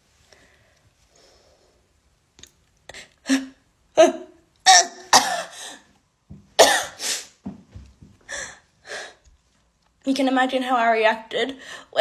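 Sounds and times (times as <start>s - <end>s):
person coughing and clearing throat: 4.7s - 5.6s, 6.6s - 7.1s.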